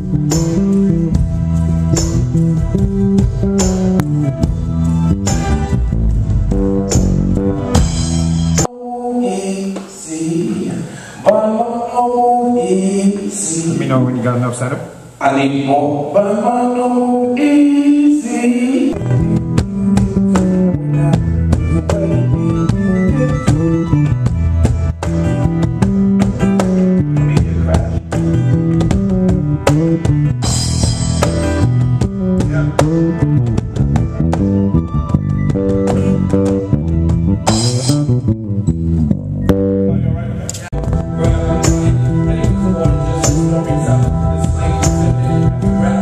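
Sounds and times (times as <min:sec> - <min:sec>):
bass guitar: 0:00.0 - 0:08.7, 0:18.9 - 0:46.0
drum kit: 0:00.0 - 0:08.7, 0:18.9 - 0:39.8, 0:40.5 - 0:46.0
guitar: 0:00.0 - 0:11.3, 0:17.1 - 0:46.0.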